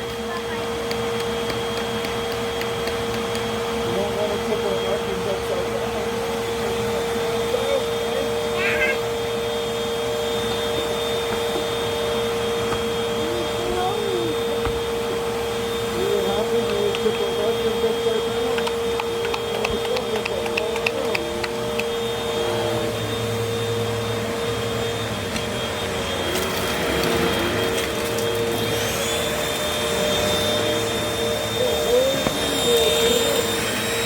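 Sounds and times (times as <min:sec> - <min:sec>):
vacuum cleaners running: 0:00.0 - 0:34.0.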